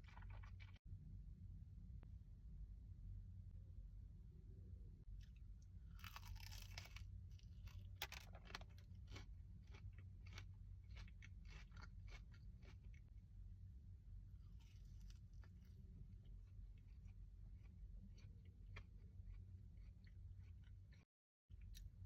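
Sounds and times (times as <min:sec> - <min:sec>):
crunchy food chewing: 0:00.0 - 0:00.8, 0:05.2 - 0:13.3, 0:14.3 - 0:21.0.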